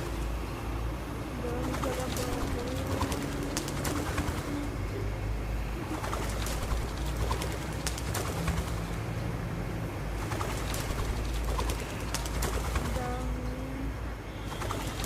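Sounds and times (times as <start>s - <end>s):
pigeons cooing: 1.4s - 9.2s.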